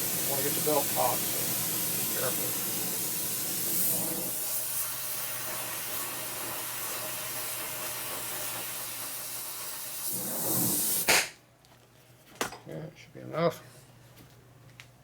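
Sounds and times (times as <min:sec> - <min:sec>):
gas torch flame hissing: 0:00.0 - 0:11.4.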